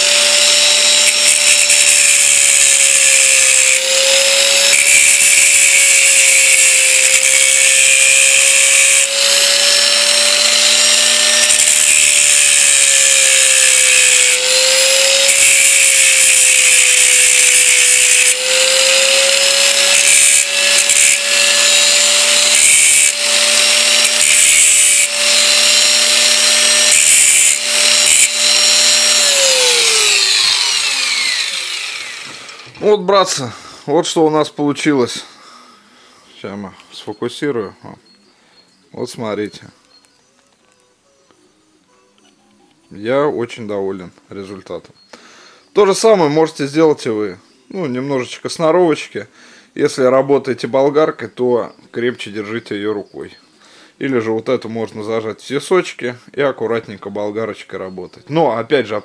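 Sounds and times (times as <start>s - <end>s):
grinder winding down: 0.0s - 33.0s
angle grinder grinding steel: 0.0s - 33.6s.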